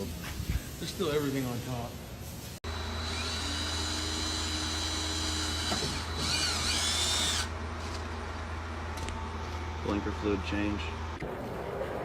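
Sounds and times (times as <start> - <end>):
small electric motor whining: 2.7 - 7.5.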